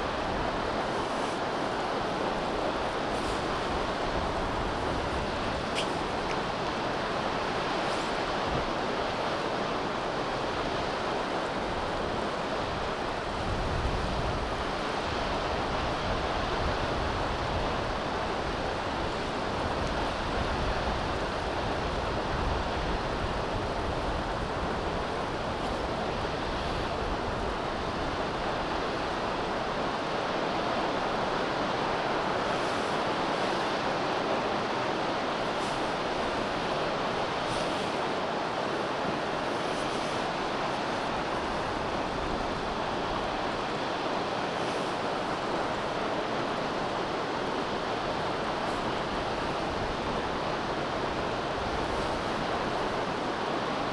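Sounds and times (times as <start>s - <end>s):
wind gusting on microphone: 0.0s - 53.9s
waterfall roaring: 14.6s - 53.9s.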